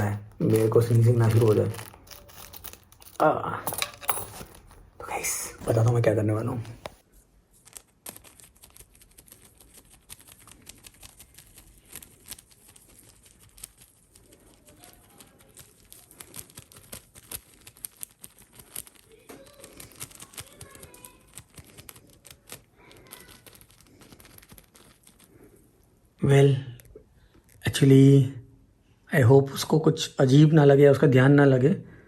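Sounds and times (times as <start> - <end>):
clicks taps and crinkles of handling: 0.0 - 5.0, 5.6 - 26.0.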